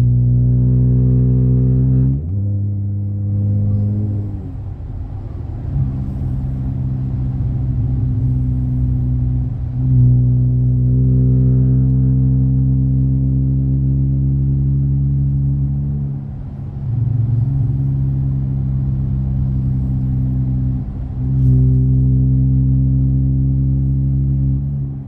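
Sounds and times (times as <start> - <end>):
car engine and exhaust droning: 0.0 - 25.0.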